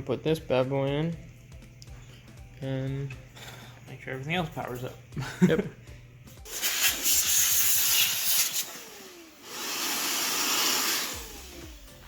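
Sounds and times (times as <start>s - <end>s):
rushing air hiss: 6.5s - 8.7s.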